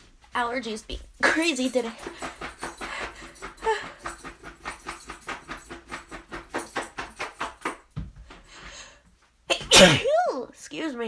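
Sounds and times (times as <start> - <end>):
woman sniffing before sneeze: 9.7 - 10.1.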